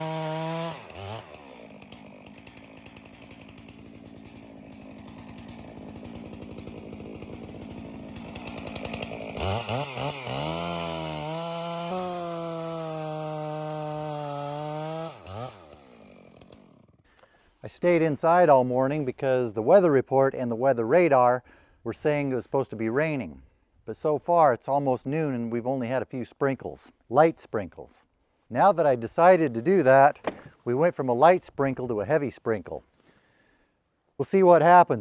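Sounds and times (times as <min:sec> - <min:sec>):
chainsaw engine revving and idling: 0:00.0 - 0:17.0.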